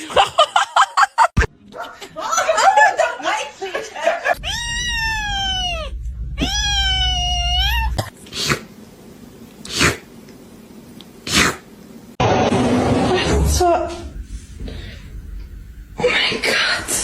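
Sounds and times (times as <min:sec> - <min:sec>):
kitten meowing: 0:04.4 - 0:08.0.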